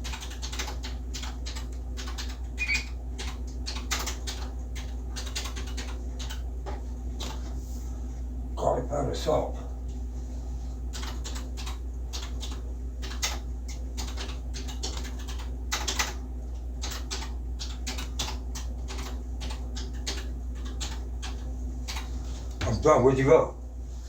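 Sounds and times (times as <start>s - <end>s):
typewriter keys striking: 0.0s - 6.4s, 14.0s - 16.2s, 16.8s - 22.1s
steady low hum: 0.0s - 24.0s.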